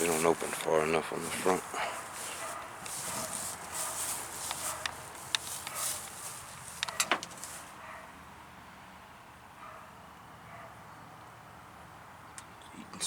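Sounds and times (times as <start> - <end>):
sharp clicks and knocks: 4.4 - 7.6.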